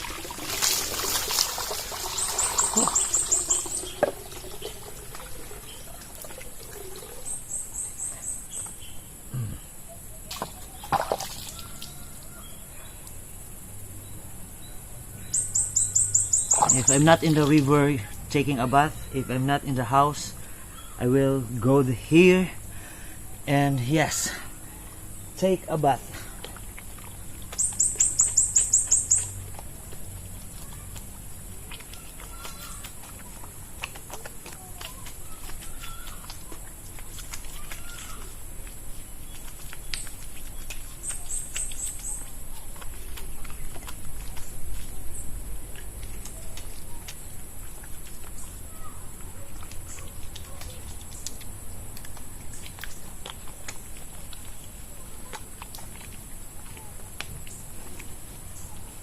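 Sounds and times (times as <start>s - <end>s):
water splashing and pouring: 0.0s - 8.1s, 10.2s - 12.0s, 16.4s - 18.3s.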